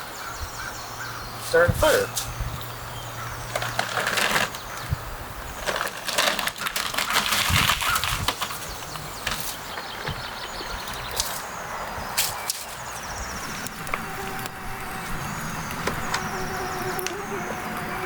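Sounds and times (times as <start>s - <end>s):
sticks rustling: 3.4s - 10.0s.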